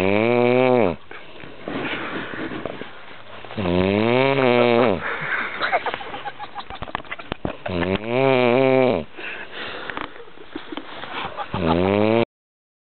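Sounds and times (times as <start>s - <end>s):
person snoring: 0.0s - 1.0s, 3.6s - 5.0s, 7.7s - 9.1s, 11.6s - 12.3s.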